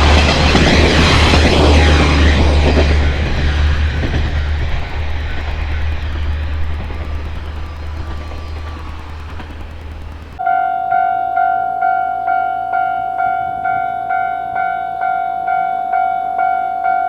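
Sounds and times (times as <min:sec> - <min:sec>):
wheel and rail noise: 0:00.0 - 0:10.5
railcar engine rumble: 0:00.0 - 0:10.6.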